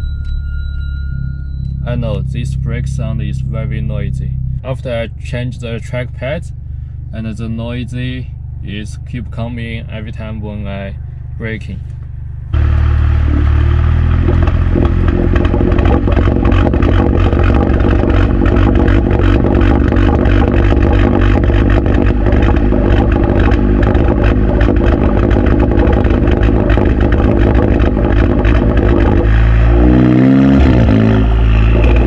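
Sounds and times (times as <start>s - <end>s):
engine exhaust with crackle: 0.0s - 32.0s.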